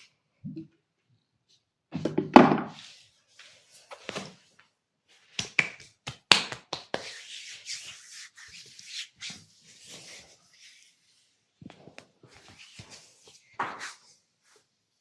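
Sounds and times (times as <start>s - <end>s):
hands rubbing on skin: 5.4s - 11.0s.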